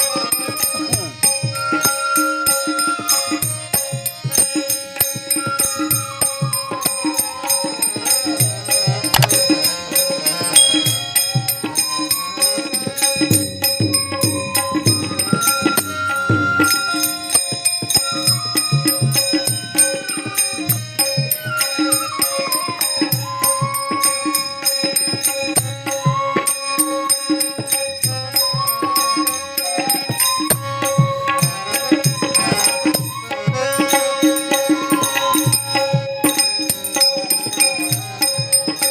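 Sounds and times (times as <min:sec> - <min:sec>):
drum beats: 0:00.0 - 0:24.4
hand cymbals jingling: 0:00.0 - 0:38.9
sliding melody: 0:05.2 - 0:23.4.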